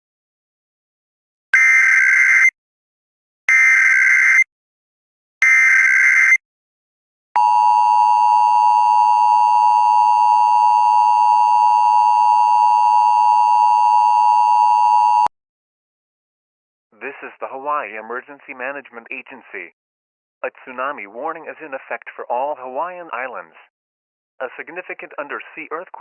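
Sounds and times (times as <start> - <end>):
two-tone attention signal: 7.4 - 15.3.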